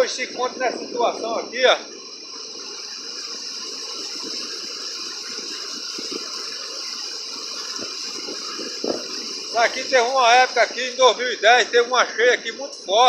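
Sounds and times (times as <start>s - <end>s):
waterfall rushing over stones: 2.4s - 11.8s.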